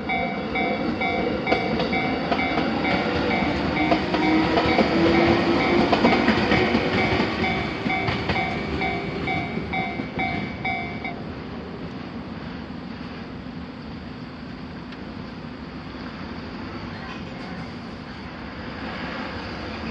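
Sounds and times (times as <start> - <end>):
railroad crossing alarm ringing: 0.0 - 11.3
passing train rumble: 0.0 - 19.9.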